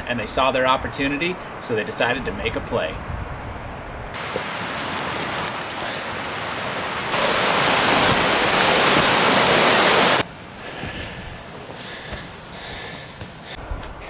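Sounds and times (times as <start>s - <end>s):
rushing water hiss: 4.2s - 10.8s.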